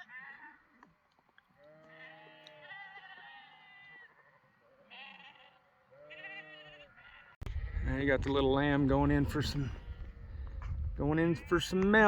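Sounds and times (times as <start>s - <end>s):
sheep bleating: 0.0s - 0.8s, 1.6s - 7.9s, 11.0s - 12.0s.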